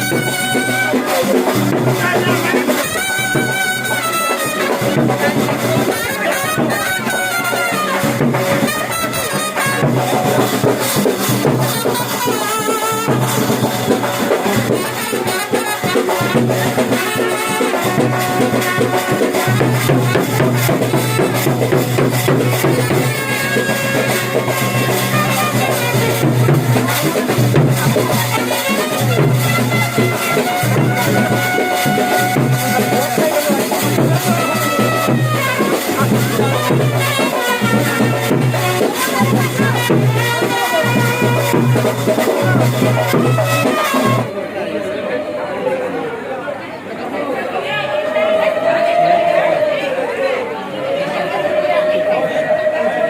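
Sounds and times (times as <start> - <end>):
music with brass and drums: 0.0 - 44.3.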